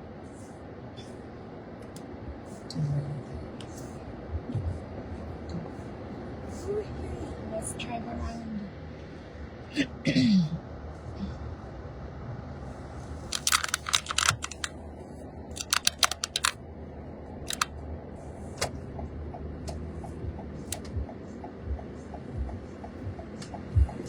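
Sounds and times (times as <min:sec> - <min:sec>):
faint regular ticking: 0:13.3 - 0:14.7, 0:15.6 - 0:16.6, 0:17.5 - 0:17.7
sharp clicks and taps: 0:13.3 - 0:14.7, 0:15.6 - 0:16.6, 0:17.5 - 0:17.7.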